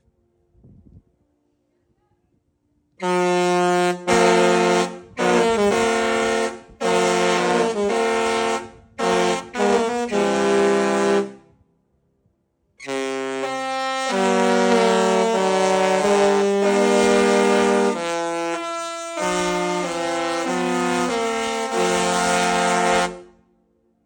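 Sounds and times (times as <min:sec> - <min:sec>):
ship's musical horn tune: 0:03.0 - 0:11.5, 0:12.8 - 0:23.5.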